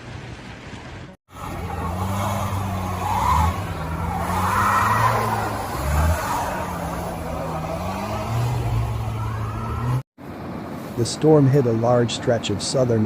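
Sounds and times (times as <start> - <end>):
tyre noise on snow: 1.3 - 10.0
car engine revving: 1.3 - 10.1.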